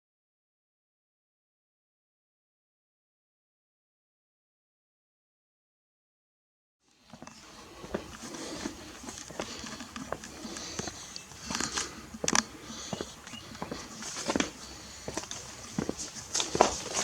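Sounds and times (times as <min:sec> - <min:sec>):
crunching footsteps: 0:07.0 - 0:17.0.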